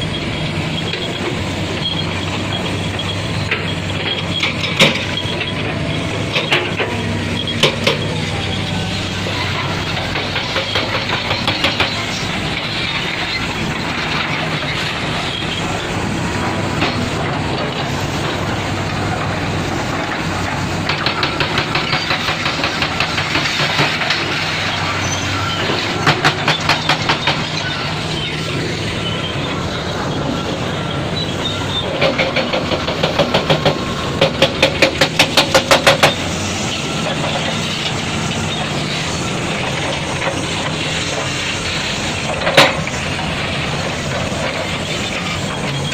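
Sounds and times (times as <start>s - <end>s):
diesel engine running: 0.0s - 45.9s
rapid metallic knocking: 32.0s - 36.2s.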